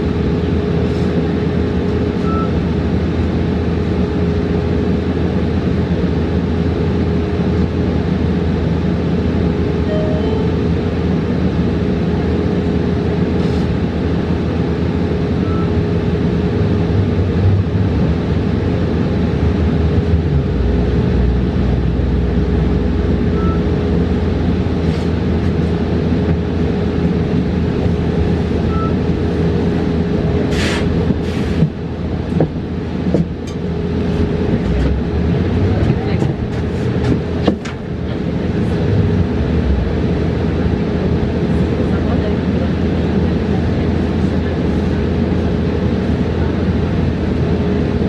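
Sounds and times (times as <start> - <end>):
bus road and drive rumble: 0.0 - 48.0
constant tone: 9.8 - 10.8
short hisses: 30.5 - 31.6.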